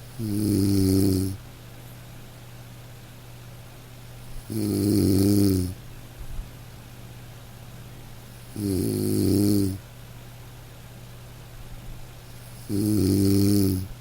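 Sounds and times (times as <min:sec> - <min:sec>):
nasal snoring: 0:00.1 - 0:01.4, 0:04.4 - 0:05.8, 0:08.4 - 0:09.8, 0:12.3 - 0:13.9.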